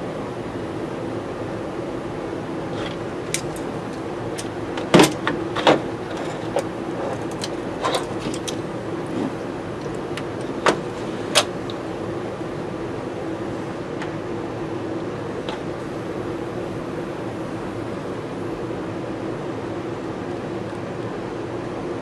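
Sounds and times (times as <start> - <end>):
fume extractor fan humming: 0.0 - 22.0
tools and wires clicking and knocking: 2.7 - 11.8.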